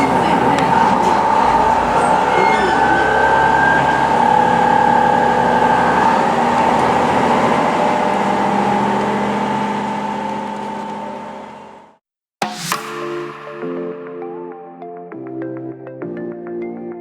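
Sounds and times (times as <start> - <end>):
diesel railcar running: 0.0 - 12.0
music: 12.4 - 17.0.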